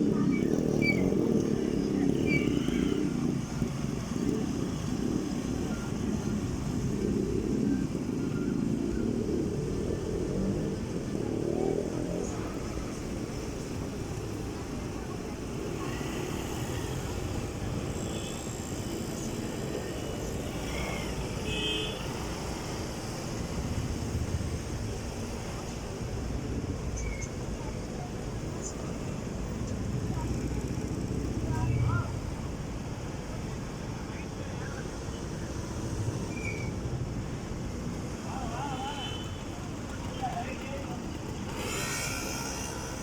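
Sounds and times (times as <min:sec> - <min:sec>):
wheels spinning on road: 0:00.0 - 0:43.0
vehicle engine straining: 0:39.4 - 0:43.0.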